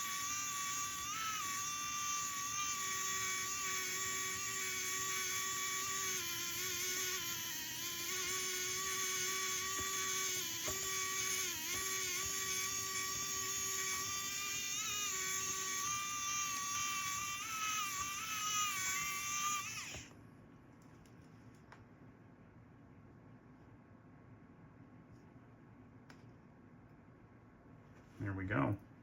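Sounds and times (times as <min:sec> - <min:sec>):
electric screwdriver motor whining: 0:00.0 - 0:20.1.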